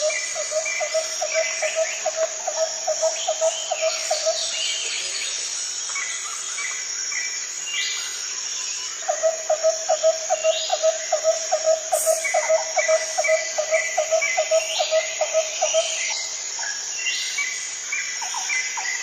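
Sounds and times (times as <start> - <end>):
high insect drone: 0.0 - 19.0.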